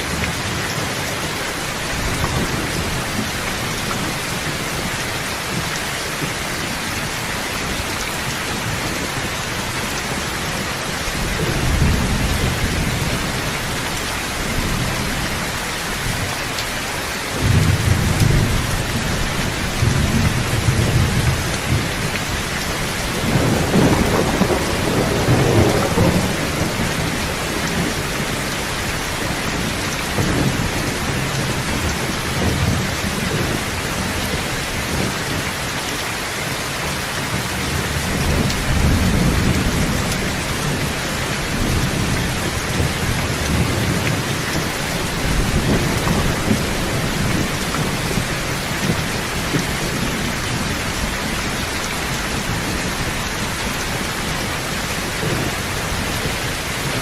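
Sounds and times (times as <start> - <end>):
heavy rain hissing: 0.0 - 57.0
thunder rumbling: 17.3 - 35.6, 36.9 - 57.0.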